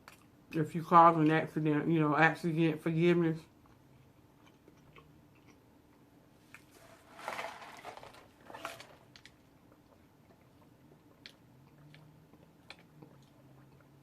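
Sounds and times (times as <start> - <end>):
quiet chewing with mouth clicks: 0.0 - 0.4, 3.5 - 6.7, 9.2 - 14.0.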